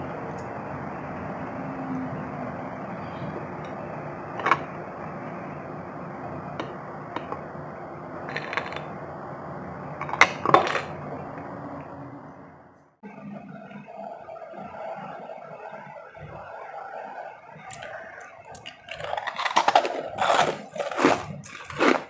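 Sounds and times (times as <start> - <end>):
steady low hum: 0.0 - 22.0
ice clicking and crackling: 8.3 - 8.9, 17.7 - 22.0.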